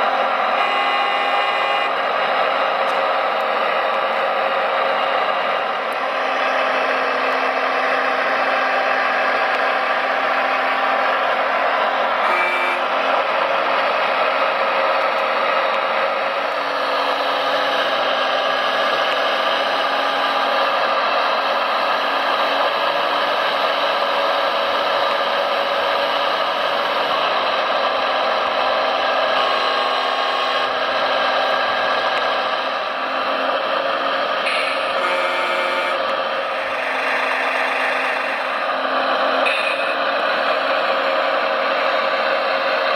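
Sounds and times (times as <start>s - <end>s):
electric motors whining: 0.0s - 13.9s, 24.5s - 42.0s.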